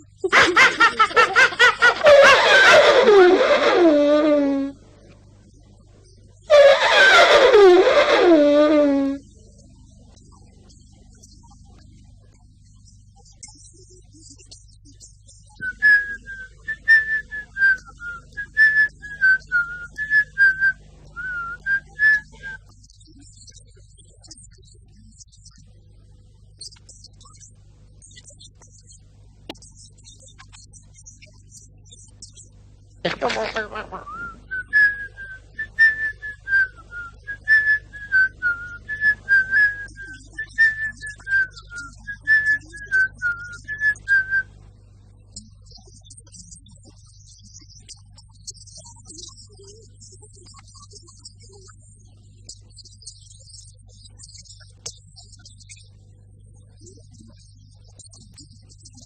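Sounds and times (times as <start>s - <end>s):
person whistling a tune: 15.6s - 22.6s, 34.1s - 44.5s.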